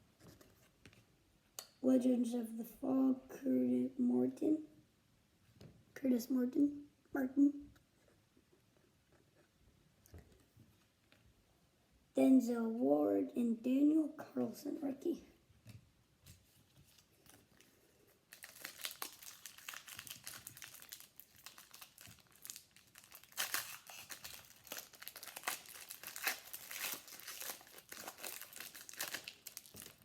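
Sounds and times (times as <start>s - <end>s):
plastic wrapper crinkling: 16.4s - 30.0s.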